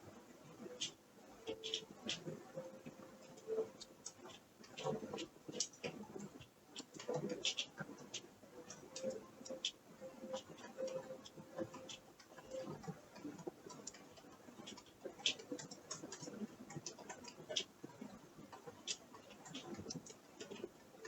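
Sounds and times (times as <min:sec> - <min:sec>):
faint clicking and creaking ticks: 0:00.0 - 0:21.0.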